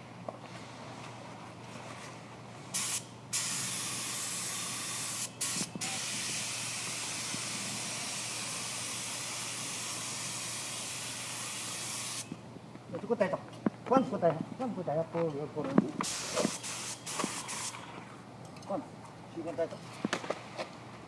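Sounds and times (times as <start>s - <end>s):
paint spray gun hissing: 2.8s - 12.3s, 16.0s - 17.8s.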